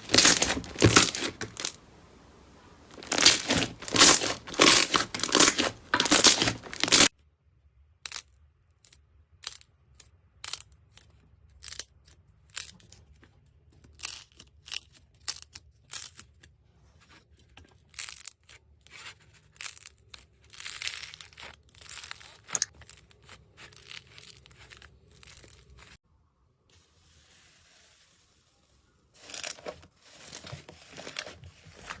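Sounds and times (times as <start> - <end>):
slime crunching: 0.0 - 1.9, 2.9 - 7.1.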